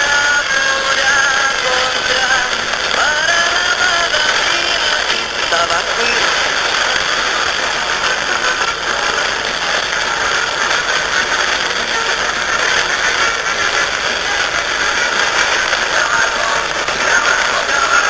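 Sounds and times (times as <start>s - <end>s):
radio static hiss: 0.0s - 18.0s.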